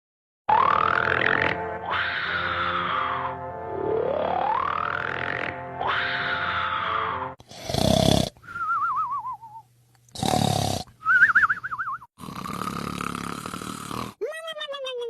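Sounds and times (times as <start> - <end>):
cartoon snoring with whistle: 0.5 - 1.7, 3.8 - 5.6, 7.5 - 8.9, 10.2 - 11.2, 12.1 - 14.2.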